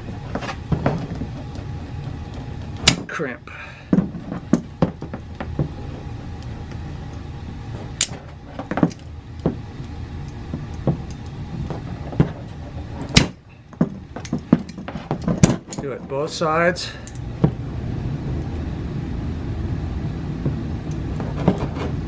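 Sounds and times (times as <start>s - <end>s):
low hum: 0.0s - 22.0s
metallic clicks from pliers and cable: 17.0s - 17.3s.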